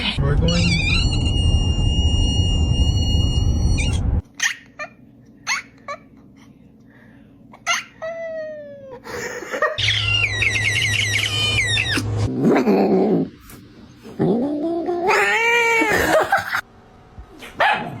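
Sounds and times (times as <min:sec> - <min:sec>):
cat squeaking and crying: 0:09.8 - 0:12.3.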